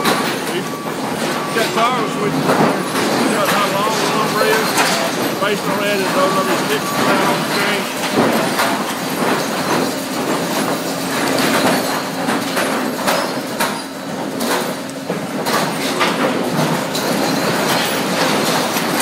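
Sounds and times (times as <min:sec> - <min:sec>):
clanks and knocks: 0:00.0 - 0:19.0
sawmill machinery rattling: 0:00.0 - 0:19.0.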